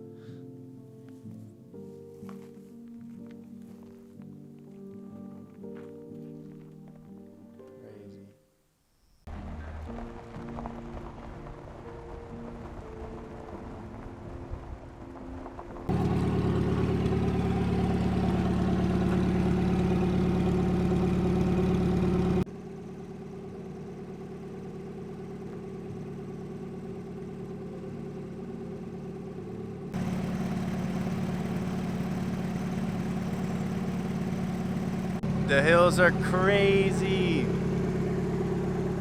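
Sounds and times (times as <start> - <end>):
vehicle engine and road noise: 9.3 - 39.0.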